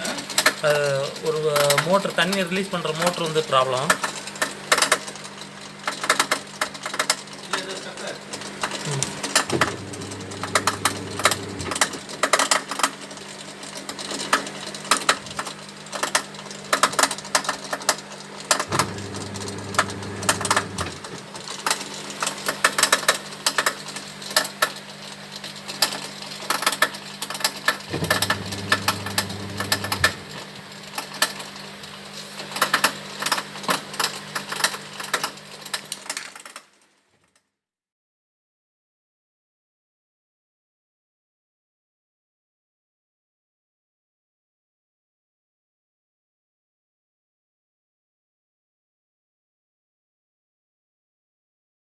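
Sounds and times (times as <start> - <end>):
steady background hum: 8.0 - 12.3, 27.9 - 30.8
drain pump motor humming: 8.8 - 12.1, 18.7 - 21.3, 27.9 - 30.6.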